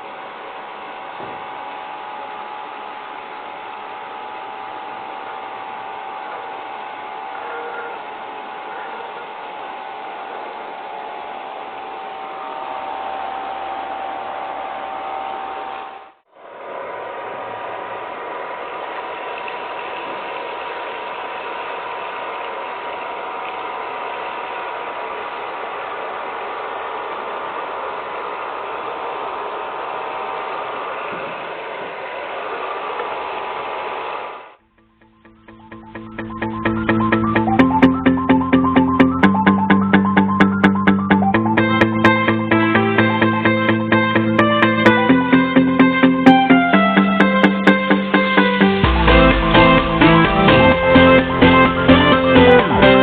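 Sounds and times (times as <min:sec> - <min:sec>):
vacuum cleaner motor whirring: 0:00.0 - 0:34.7.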